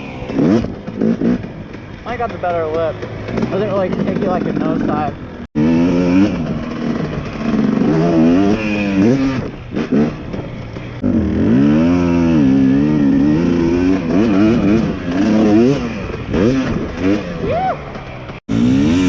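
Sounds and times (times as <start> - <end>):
dirt bike engine revving: 0.0 - 19.0.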